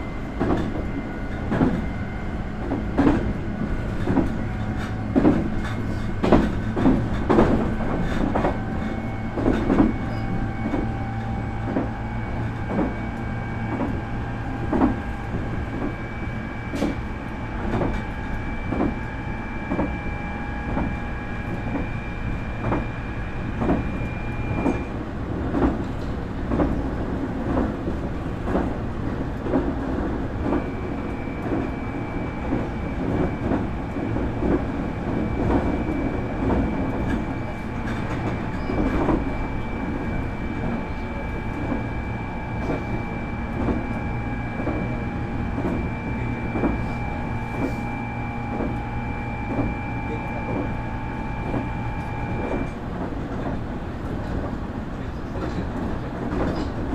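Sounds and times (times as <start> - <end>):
train motor whine: 0.0 - 24.9, 27.6 - 53.5
train rumble: 0.0 - 56.9
wheels clacking over rail joints: 0.1 - 16.0.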